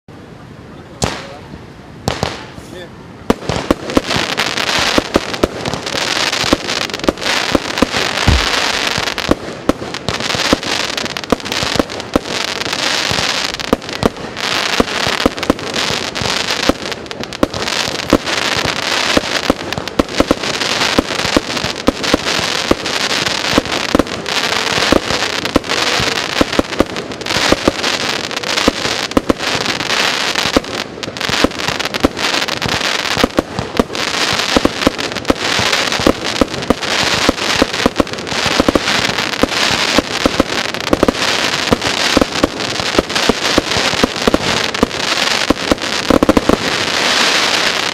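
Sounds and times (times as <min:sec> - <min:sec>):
firework shells crackling: 0:03.4 - 0:47.9
firework launch thumps: 0:07.5 - 0:09.8.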